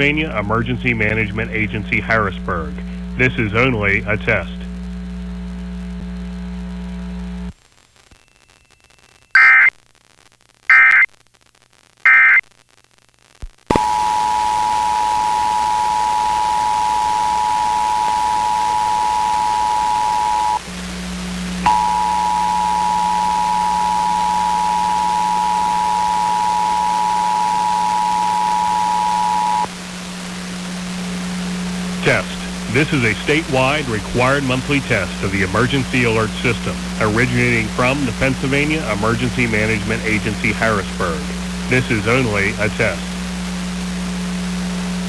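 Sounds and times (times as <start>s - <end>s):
radio hiss: 0.0s - 45.0s
screeching data bursts: 13.7s - 20.6s, 21.6s - 29.7s
low hum: 13.7s - 45.0s.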